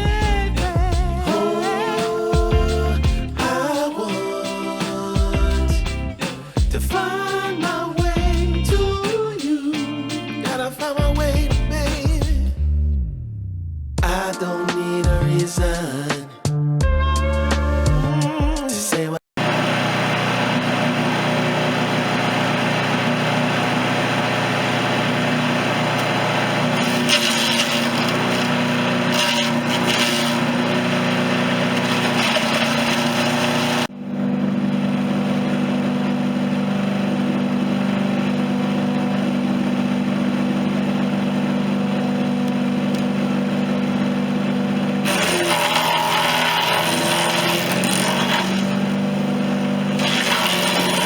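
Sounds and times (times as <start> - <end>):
chipper engine running: 0.0 - 12.4, 19.4 - 51.0
chipper chewing material: 25.8 - 33.9, 45.0 - 48.8, 49.9 - 51.0.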